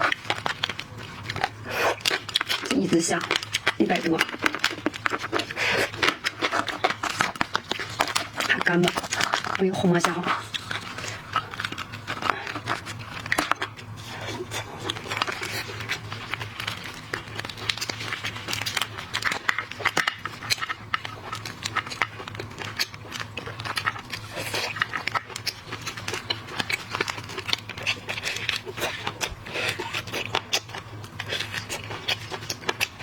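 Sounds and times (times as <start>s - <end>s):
shrimp shell crackling: 0.0s - 33.0s.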